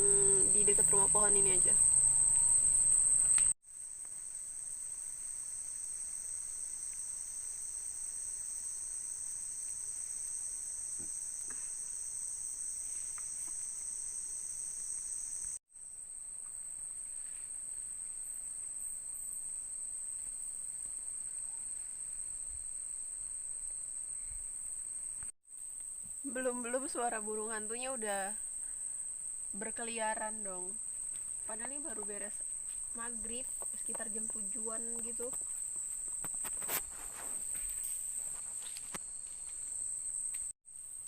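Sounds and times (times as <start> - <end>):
insects chirring: 0.0 - 41.0.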